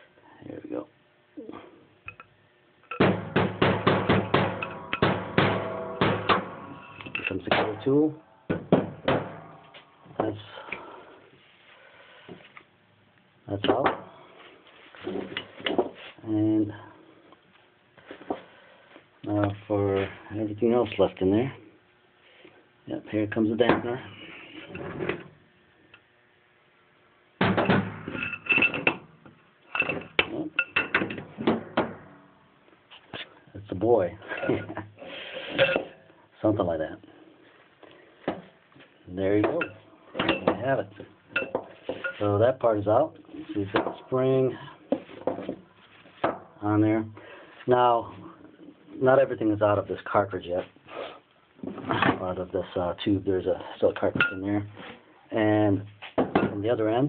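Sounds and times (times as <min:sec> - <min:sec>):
sharp metal knocks on tube: 0:02.9 - 0:06.6.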